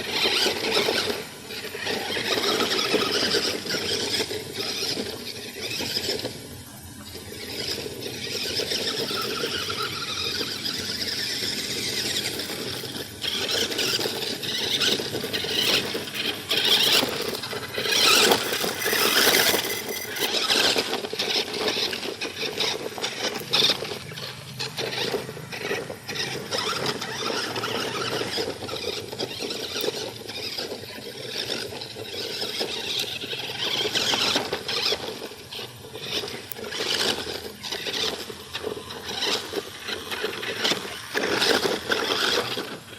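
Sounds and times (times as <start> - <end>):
toy car electric motor whining: 0.0 - 42.9
scraping and clattering: 12.2 - 20.9.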